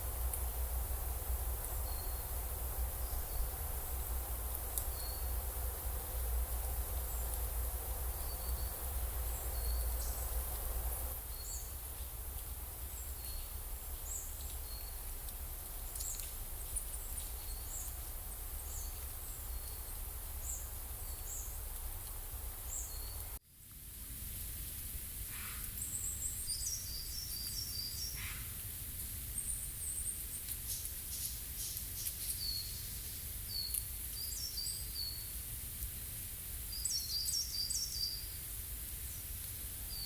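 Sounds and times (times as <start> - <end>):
low rumble: 0.0 - 23.4
steady hiss: 0.0 - 40.0
bird chirping: 1.5 - 12.1, 12.9 - 15.1, 15.8 - 23.4, 29.4 - 35.3.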